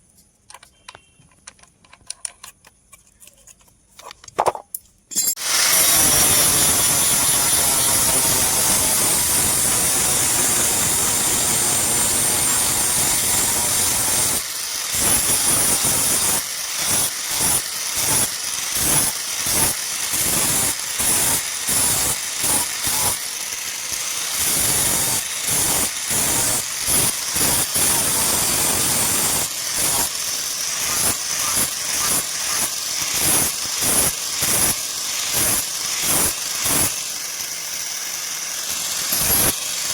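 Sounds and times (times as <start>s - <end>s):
power tool running with hiss: 5.4s - 39.9s
quick repeated strokes: 30.7s - 33.5s.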